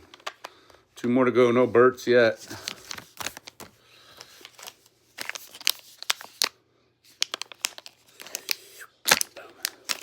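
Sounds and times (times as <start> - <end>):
wrapper crinkling and tearing: 2.4 - 10.0.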